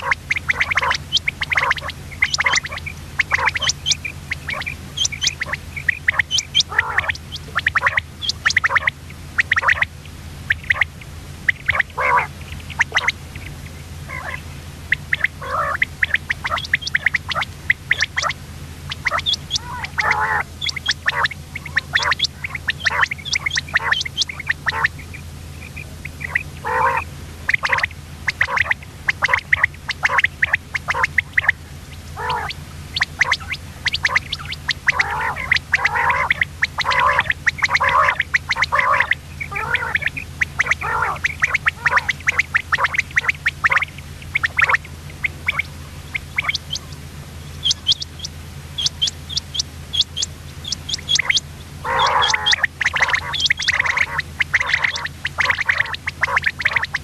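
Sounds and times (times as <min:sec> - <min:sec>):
quail calling: 0:00.0 - 0:57.0
steady low hum: 0:00.0 - 0:57.0.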